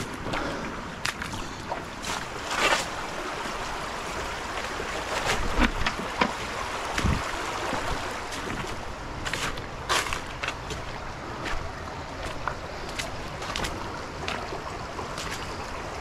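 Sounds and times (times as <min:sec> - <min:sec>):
creek water running: 0:00.0 - 0:16.0
wading and handling in water: 0:00.0 - 0:16.0.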